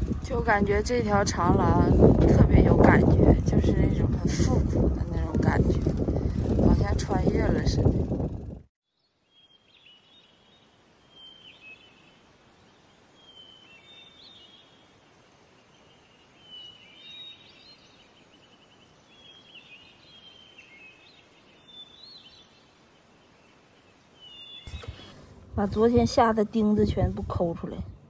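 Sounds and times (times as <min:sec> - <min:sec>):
small songbirds chirping: 0:08.8 - 0:27.0
steady background hiss: 0:09.3 - 0:28.0.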